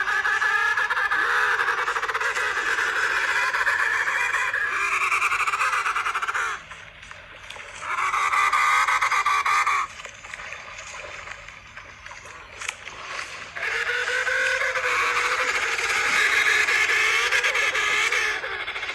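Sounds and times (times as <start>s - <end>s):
geese honking: 13.6s - 18.9s.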